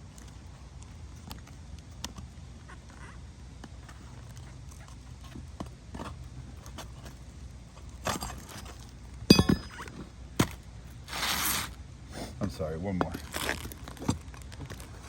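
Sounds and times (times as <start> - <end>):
sharp metallic clink: 9.3 - 9.9.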